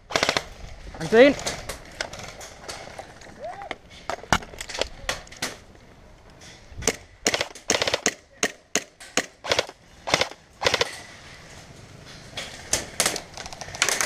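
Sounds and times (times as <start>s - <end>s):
airsoft guns firing: 0.0s - 0.6s, 6.8s - 11.0s.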